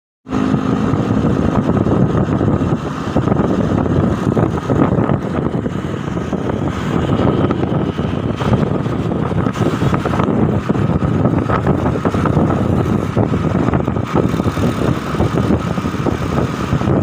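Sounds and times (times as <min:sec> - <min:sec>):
vehicle engine and road noise: 0:00.2 - 0:17.0
wind buffeting microphone: 0:00.3 - 0:17.0.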